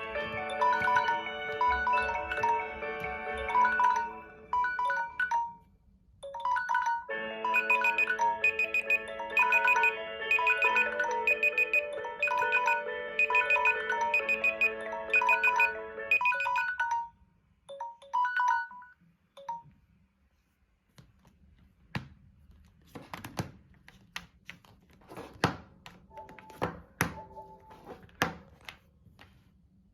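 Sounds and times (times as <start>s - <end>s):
phone alarm melody: 0.0s - 5.7s, 6.3s - 17.2s.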